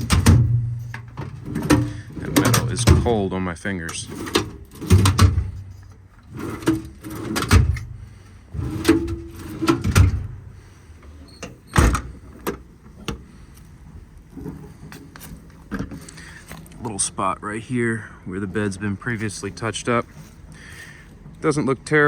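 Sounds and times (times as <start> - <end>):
metal doors and latches clanking: 0.0 - 13.4.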